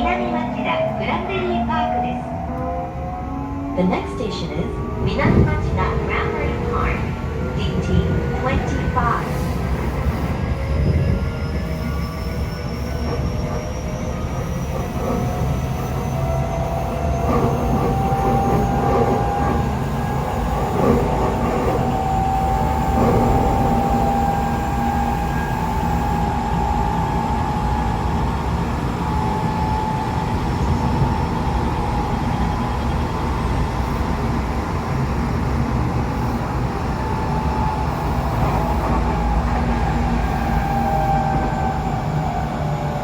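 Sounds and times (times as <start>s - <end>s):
rail rumble: 0.0s - 43.0s
train motor whine: 9.0s - 43.0s.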